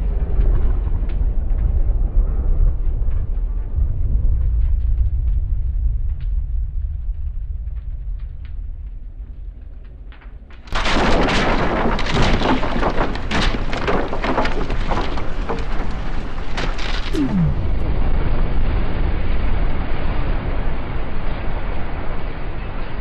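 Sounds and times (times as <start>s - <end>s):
crackling and debris impacts: 10.6s - 17.9s
dull rumble: 16.8s - 18.8s
large explosion: 17.0s - 18.8s.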